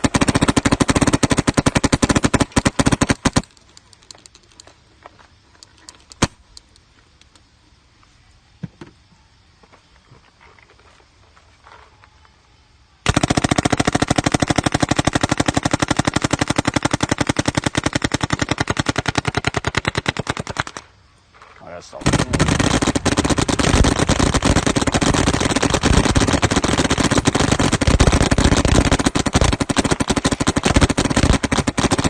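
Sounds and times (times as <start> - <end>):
paintball marker firing: 22.0 - 32.0.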